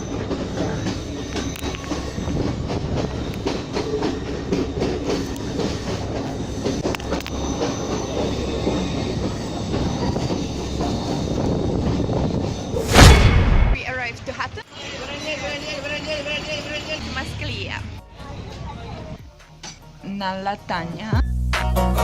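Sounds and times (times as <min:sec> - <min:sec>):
train rumbling: 0:00.0 - 0:14.6
faint metallic wheel squeal: 0:06.6 - 0:11.4.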